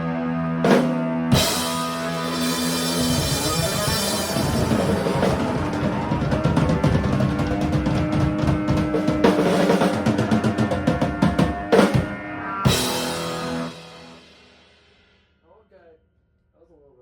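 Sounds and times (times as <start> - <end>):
drum kit roll: 0.6 - 15.0
cymbal and drum hits: 11.2 - 15.0.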